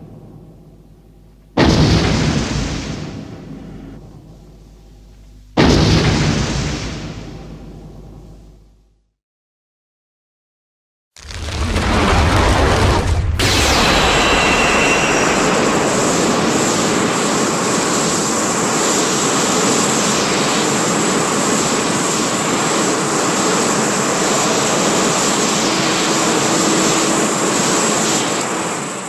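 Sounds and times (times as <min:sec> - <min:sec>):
loud steady rushing noise: 0:13.4 - 0:29.0.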